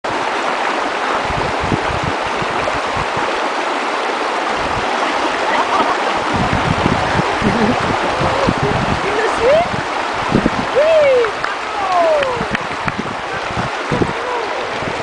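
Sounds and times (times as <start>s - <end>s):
stream rushing over rocks: 0.0s - 15.0s
low thumps: 5.8s - 9.1s.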